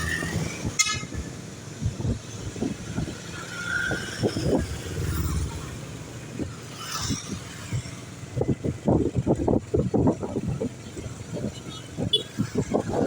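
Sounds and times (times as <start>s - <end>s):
road traffic passing: 0.0s - 13.0s
vehicle engine rumble: 0.0s - 13.0s.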